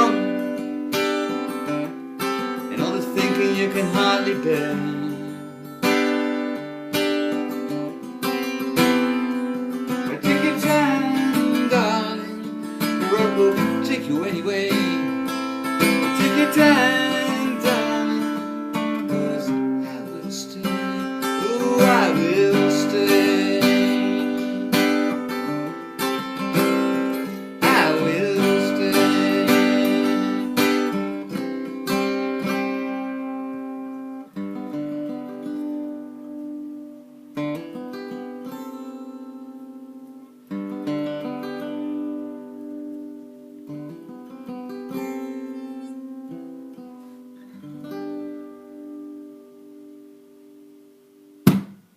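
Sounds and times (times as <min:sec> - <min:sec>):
acoustic guitar strumming: 0:00.0 - 0:51.9.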